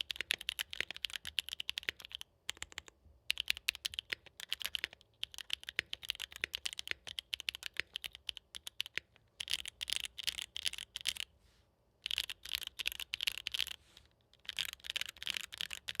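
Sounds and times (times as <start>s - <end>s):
mechanical keyboard typing: 0.0s - 11.2s, 12.0s - 13.8s, 14.4s - 16.0s.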